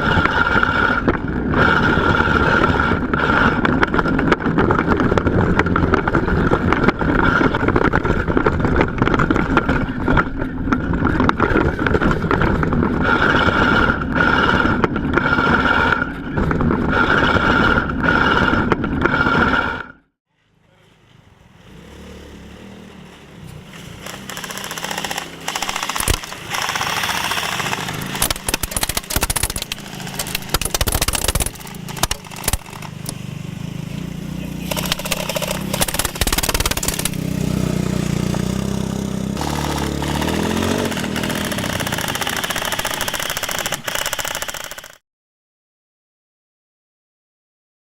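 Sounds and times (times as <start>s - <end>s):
small engine running with whine: 0.0s - 19.8s, 21.6s - 45.0s
sharp clattering clicks: 24.0s - 33.2s, 34.7s - 37.3s, 39.4s - 45.0s.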